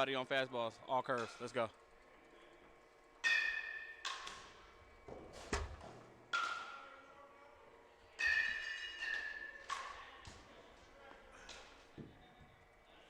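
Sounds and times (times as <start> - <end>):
baseball bat ringing pings: 3.2 - 4.5, 8.1 - 9.8.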